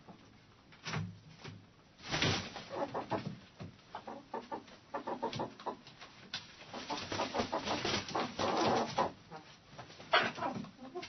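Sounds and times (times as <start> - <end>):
hens clucking: 2.6 - 11.0.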